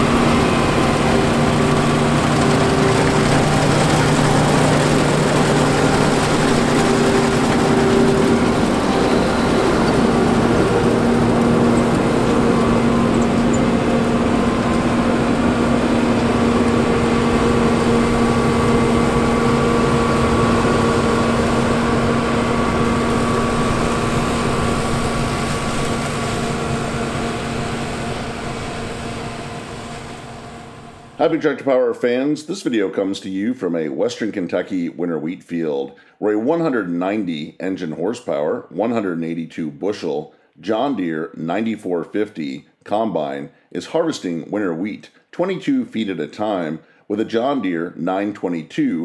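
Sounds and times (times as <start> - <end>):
combine harvester humming: 0.0 - 31.2.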